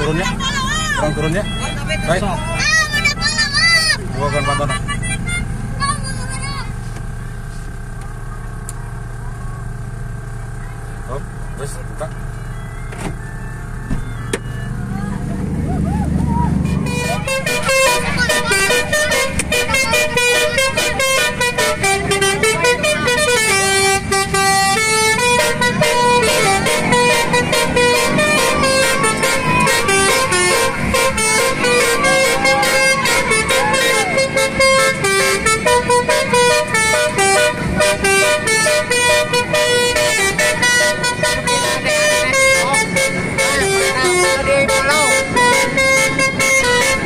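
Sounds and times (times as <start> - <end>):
multi-note vehicle horn tune: 16.5 - 47.0.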